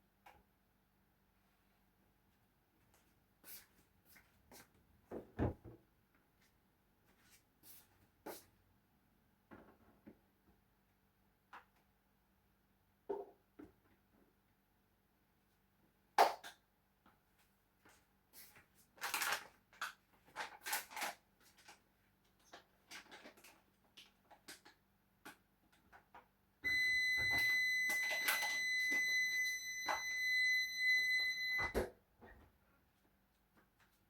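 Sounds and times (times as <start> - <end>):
high electronic beep: 26.7 - 31.8.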